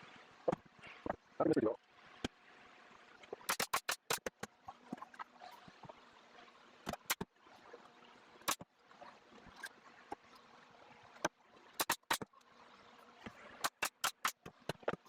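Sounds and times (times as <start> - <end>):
nail stapler shots into wood: 3.5 - 4.3, 11.8 - 12.3, 13.6 - 14.8.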